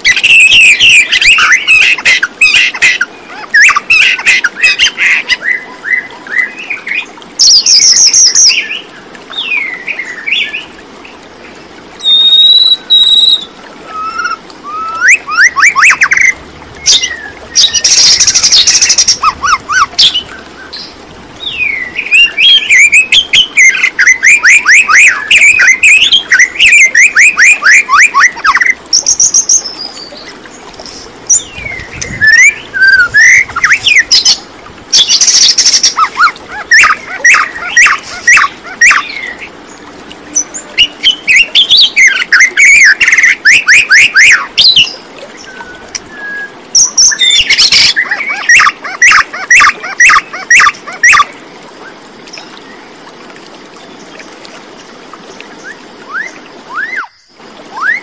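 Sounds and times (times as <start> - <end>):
birds chirping: 0.0 - 11.2, 12.0 - 51.3
high whistled bird notes: 7.4 - 8.6, 12.0 - 20.2, 21.5 - 29.6, 31.3 - 34.4, 55.6 - 58.0
bird harsh squawk: 35.0 - 39.1, 47.2 - 51.3.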